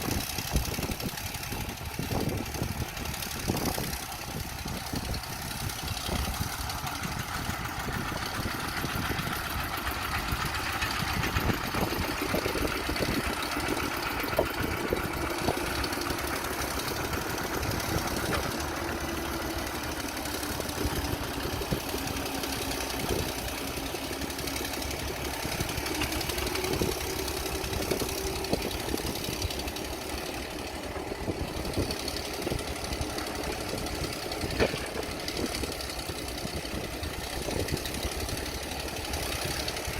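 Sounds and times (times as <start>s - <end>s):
diesel excavator engine clattering: 0.0s - 39.9s.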